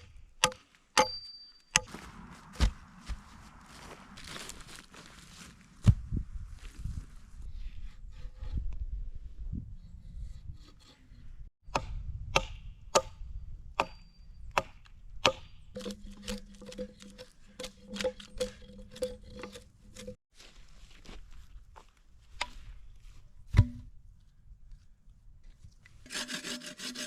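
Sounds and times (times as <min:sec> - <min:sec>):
axe chopping into log: 0:11.7 - 0:13.1, 0:23.5 - 0:23.9.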